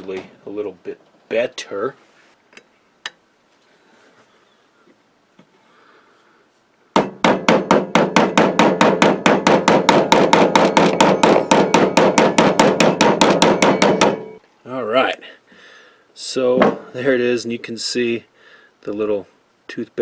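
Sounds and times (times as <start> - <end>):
hammer tapping metal pin: 7.0 - 14.4.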